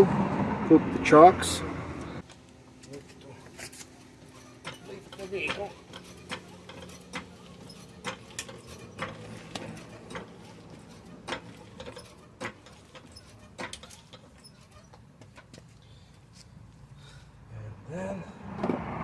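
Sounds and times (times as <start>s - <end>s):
hand tools clicking: 3.7s - 15.6s.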